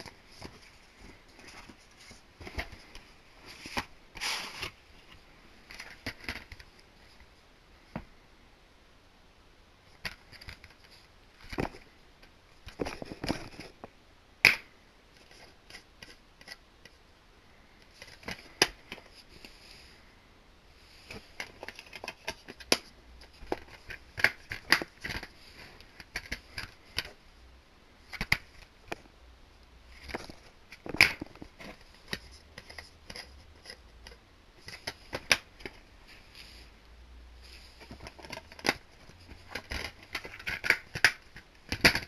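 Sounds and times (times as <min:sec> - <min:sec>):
plastic cases clicking and rustling: 0:00.0 - 0:07.3, 0:09.9 - 0:13.9, 0:17.8 - 0:19.6, 0:21.0 - 0:27.2, 0:28.0 - 0:29.1, 0:29.9 - 0:35.9, 0:37.7 - 0:42.0
sharp plastic snaps: 0:14.4 - 0:14.7, 0:37.9 - 0:42.0.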